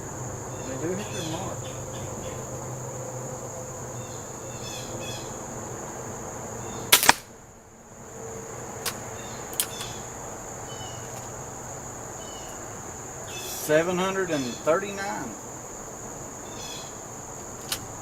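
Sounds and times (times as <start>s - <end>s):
crickets chirping: 0.0s - 18.0s
air pistol firing: 6.9s - 7.3s.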